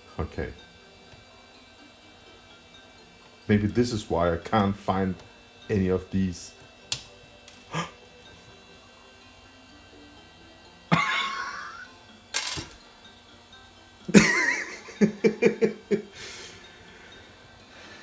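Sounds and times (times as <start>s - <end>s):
man laughing: 7.7s - 8.0s, 10.9s - 11.9s, 14.1s - 16.2s.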